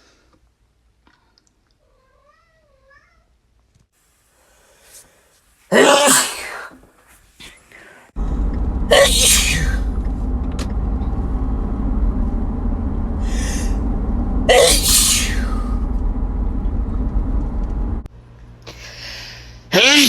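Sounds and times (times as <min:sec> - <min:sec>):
person sneezing loudly: 0:05.7 - 0:06.7
steady low rumble: 0:08.2 - 0:18.3.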